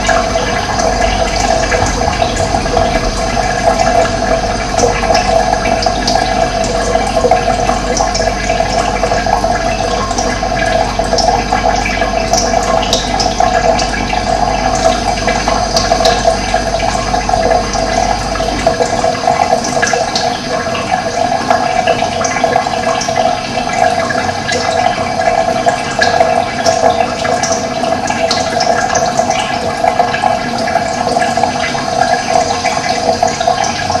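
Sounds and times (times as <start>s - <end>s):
running water flowing: 0.0s - 34.0s.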